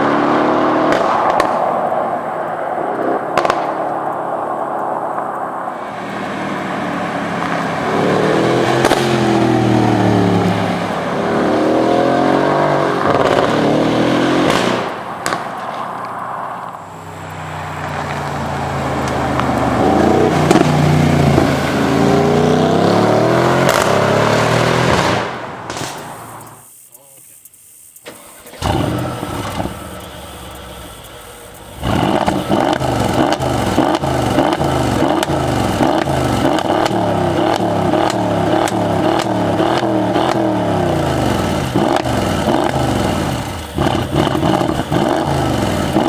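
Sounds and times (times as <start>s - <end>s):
exhaust pops and crackles: 0.0s - 22.4s, 23.6s - 46.0s
car engine accelerating hard: 0.0s - 26.6s, 28.1s - 46.0s.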